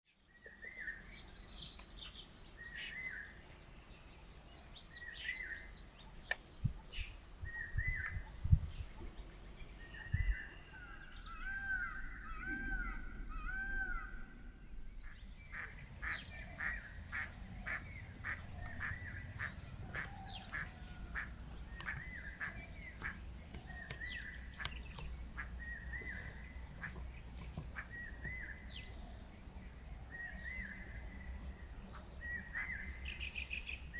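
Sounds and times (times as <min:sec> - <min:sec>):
birds chirping: 0:00.1 - 0:33.9
high-pitched whine: 0:06.6 - 0:24.4.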